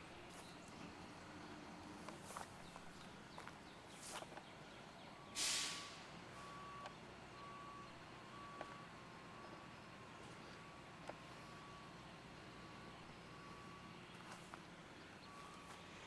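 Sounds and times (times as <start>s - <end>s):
vehicle reversing alarm beeping: 0.3s - 16.0s
loud hiss: 5.4s - 6.1s.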